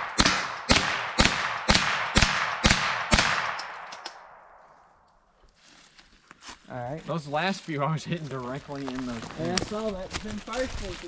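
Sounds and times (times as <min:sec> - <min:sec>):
rifle shots with ringing echo: 0:00.0 - 0:05.0.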